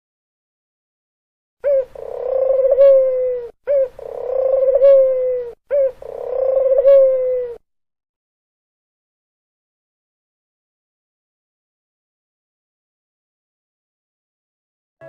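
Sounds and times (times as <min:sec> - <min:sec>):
dove cooing: 0:01.6 - 0:07.6.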